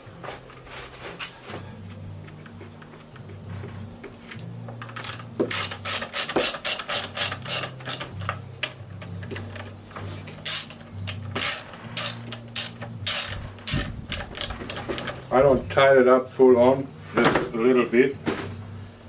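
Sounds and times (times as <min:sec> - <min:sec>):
steady low hum: 0:00.0 - 0:19.0
socket ratchet wrench clicking: 0:04.8 - 0:09.7, 0:10.4 - 0:15.2.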